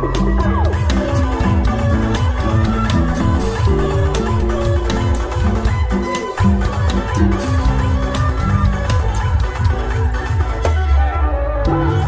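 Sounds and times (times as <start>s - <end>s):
dance music with heavy bass: 0.0s - 8.1s.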